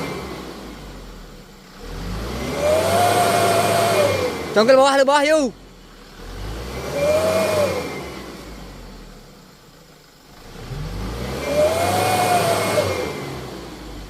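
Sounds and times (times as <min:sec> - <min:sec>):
truck engine revving: 0:00.0 - 0:01.0, 0:01.7 - 0:05.5, 0:06.2 - 0:09.1, 0:10.4 - 0:14.0.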